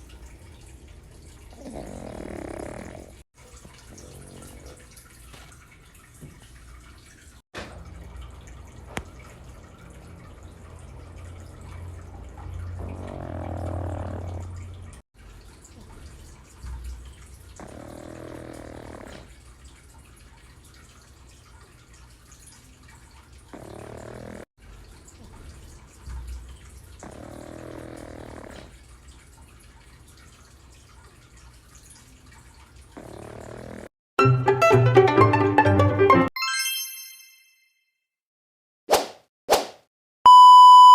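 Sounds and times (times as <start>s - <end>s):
dog snoring: 1.5s - 3.2s, 3.8s - 5.0s, 12.7s - 14.6s, 17.6s - 19.4s, 23.5s - 24.5s, 27.0s - 28.8s, 33.0s - 33.9s.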